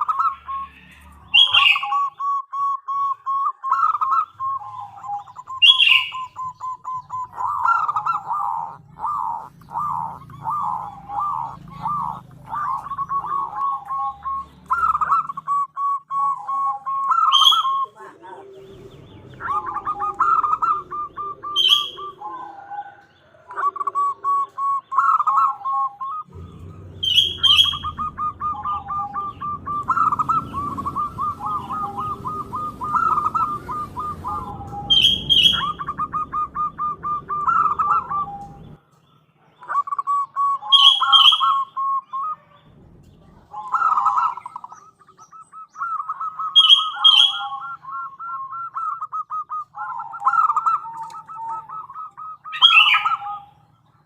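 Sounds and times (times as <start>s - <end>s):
dove cooing: 0.0s - 38.8s, 39.4s - 53.7s
sharp high chirps: 26.2s - 38.7s.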